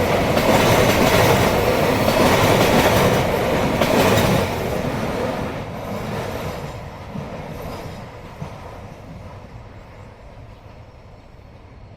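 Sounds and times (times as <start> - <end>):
freight train wheels rumbling: 0.0 - 11.9.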